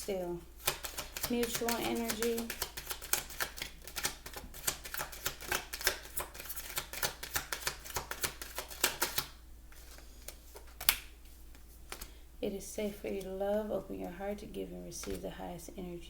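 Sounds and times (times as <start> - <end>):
cards being shuffled: 0.6 - 12.2, 12.8 - 13.4, 15.0 - 15.2.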